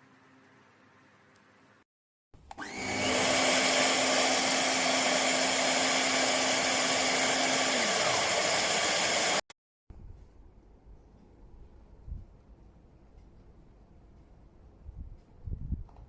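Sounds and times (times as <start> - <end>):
vacuum cleaner motor whining: 2.5 - 9.5.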